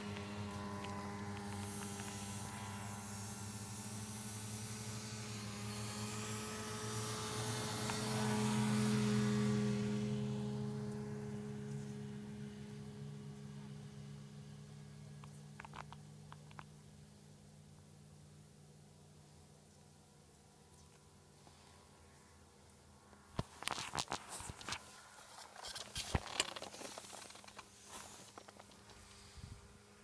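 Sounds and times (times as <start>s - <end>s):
engine humming: 0.0s - 30.0s
hiss: 1.1s - 9.2s.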